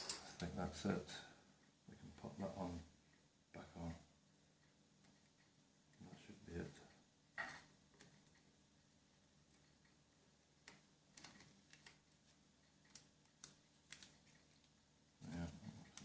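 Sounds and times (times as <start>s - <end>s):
small plastic parts clicking: 10.6s - 14.8s.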